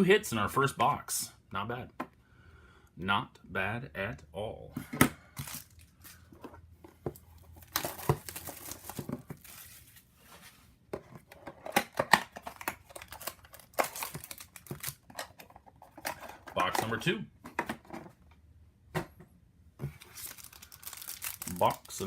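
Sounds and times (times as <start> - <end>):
packaging tearing and crinkling: 7.6 - 9.8, 12.4 - 15.3, 20.0 - 22.0.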